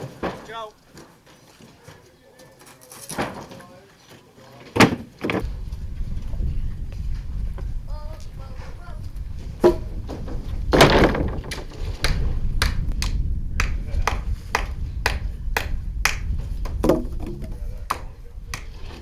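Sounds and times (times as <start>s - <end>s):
hammer blows on wood: 5.2s - 19.0s.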